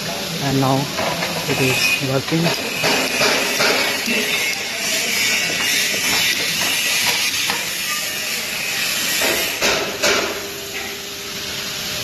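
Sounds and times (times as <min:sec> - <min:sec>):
steady hiss: 0:00.0 - 0:12.0
sharp knocks: 0:09.2 - 0:10.5.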